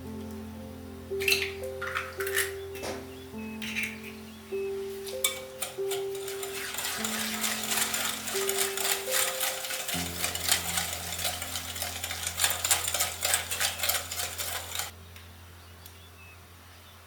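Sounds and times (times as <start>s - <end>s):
utensil scraping mixing bowl: 5.2s - 14.9s.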